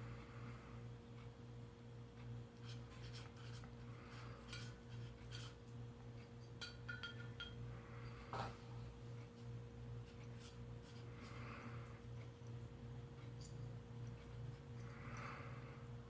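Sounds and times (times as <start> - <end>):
steady low hum: 0.0 - 16.0
cat chewing and licking food: 2.2 - 6.6, 9.1 - 16.0.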